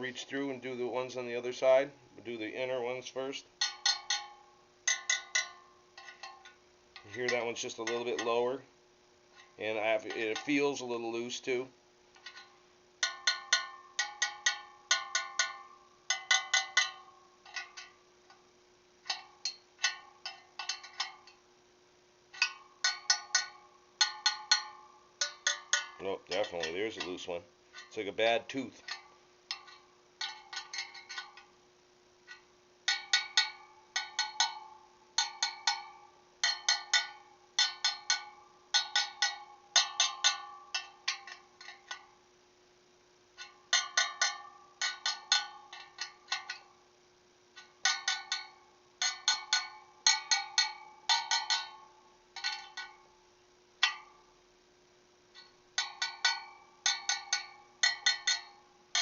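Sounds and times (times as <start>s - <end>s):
steel spokes tapped ringing: 2.2s - 8.7s, 9.4s - 18.4s, 19.0s - 21.5s, 22.3s - 31.6s, 32.2s - 42.2s, 43.4s - 46.8s, 47.5s - 54.4s, 55.3s - 59.0s.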